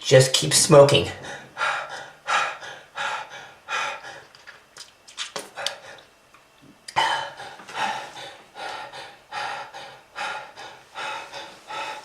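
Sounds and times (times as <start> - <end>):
person gasping and panting: 1.1 - 4.4, 6.9 - 12.0.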